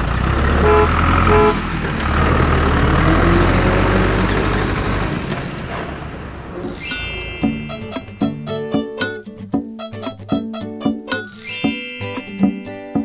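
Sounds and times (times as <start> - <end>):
heavy truck engine rumbling: 0.0 - 7.8
truck horn toots: 0.6 - 1.7.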